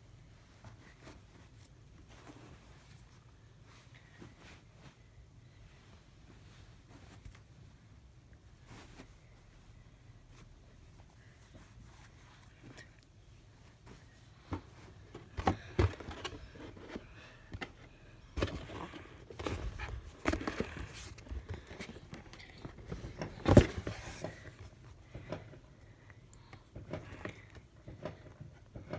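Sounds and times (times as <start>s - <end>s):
cardboard box rustling and scraping: 14.5s - 24.8s.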